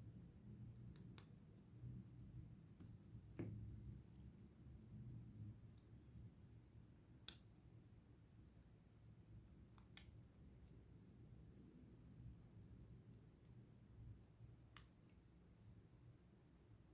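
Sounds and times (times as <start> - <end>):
faint sharp clicks of small tools: 0.9 - 1.4, 2.8 - 4.7, 5.7 - 8.8, 9.7 - 10.9, 11.5 - 16.3.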